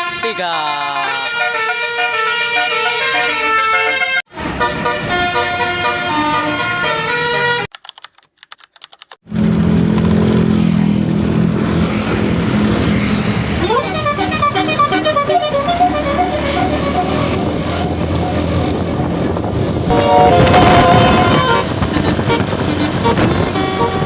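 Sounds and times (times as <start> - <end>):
multi-tone bus air horn tunes: 0.0 - 7.7, 13.6 - 18.8, 19.9 - 24.0
vehicle noise: 0.9 - 7.7, 9.2 - 24.0
low steady horn note: 19.9 - 24.0.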